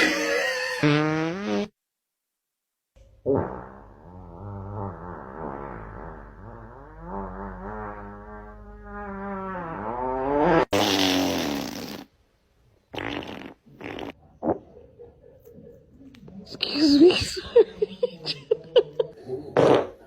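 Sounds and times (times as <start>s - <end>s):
fart noise: 0.0s - 1.8s, 3.2s - 12.2s, 12.9s - 14.7s, 19.5s - 20.0s.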